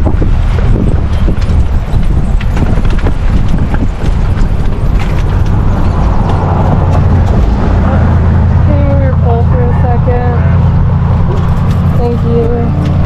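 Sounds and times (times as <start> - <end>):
bicycle rattling and clicking: 0.0 - 8.0, 11.0 - 13.0
wind rumble on microphone: 0.0 - 13.0.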